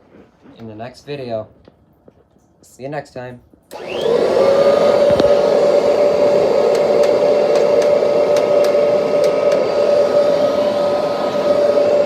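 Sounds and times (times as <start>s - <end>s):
vacuum cleaner motor whine: 3.7s - 12.0s.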